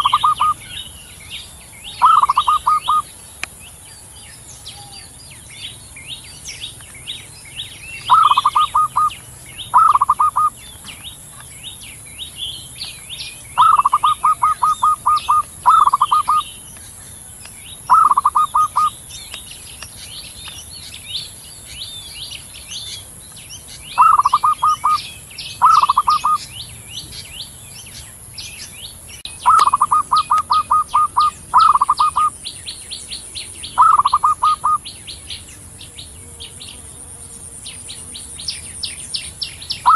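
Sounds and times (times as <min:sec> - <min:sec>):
dove cooing: 0:00.0 - 0:00.6, 0:02.0 - 0:03.1, 0:08.1 - 0:11.0, 0:13.6 - 0:16.5, 0:17.9 - 0:19.0, 0:24.0 - 0:26.4, 0:29.4 - 0:32.4, 0:33.7 - 0:34.9
small birds twittering: 0:00.0 - 0:39.9.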